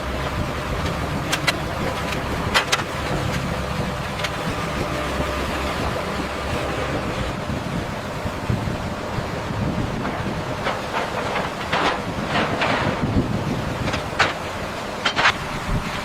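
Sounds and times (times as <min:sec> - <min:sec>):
mechanical rumble with hiss: 0:00.0 - 0:16.0.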